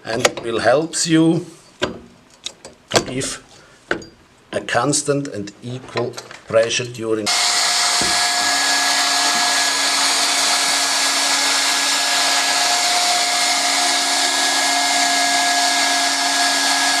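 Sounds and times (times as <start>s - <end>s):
hot-air blower running: 7.3s - 17.0s.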